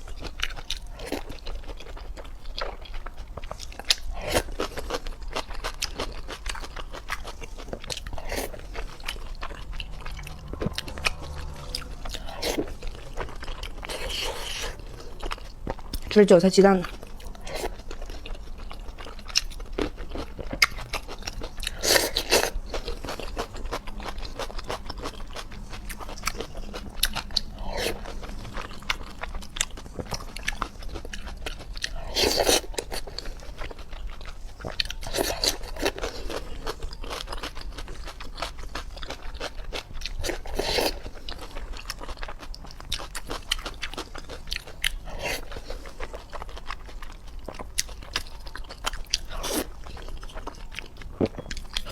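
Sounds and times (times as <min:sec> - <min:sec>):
person chewing and crunching: 0:00.0 - 0:51.9.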